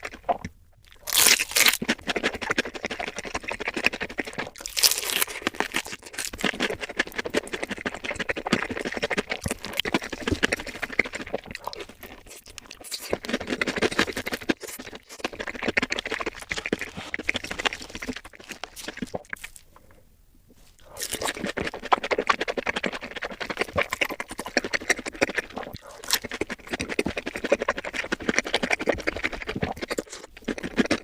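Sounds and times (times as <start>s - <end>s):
chewing and crunching fried food: 0.0s - 31.0s.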